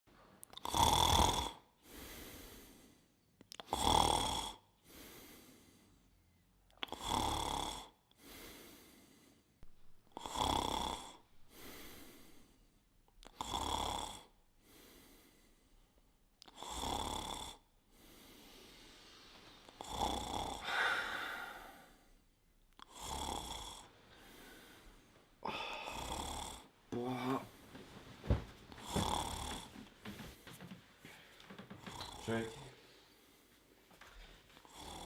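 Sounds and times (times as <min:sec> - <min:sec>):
person snoring: 0:00.5 - 0:02.8, 0:03.6 - 0:05.5, 0:06.8 - 0:08.9, 0:10.1 - 0:12.6, 0:13.2 - 0:15.1, 0:16.4 - 0:18.6, 0:19.6 - 0:22.2, 0:22.8 - 0:27.6, 0:28.3 - 0:30.4, 0:31.4 - 0:32.9, 0:34.6 - 0:35.0
soft breath: 0:01.8 - 0:03.3, 0:04.8 - 0:06.2, 0:08.2 - 0:10.0, 0:11.4 - 0:12.9, 0:14.6 - 0:16.1, 0:17.8 - 0:19.8, 0:20.5 - 0:22.4, 0:23.7 - 0:35.0.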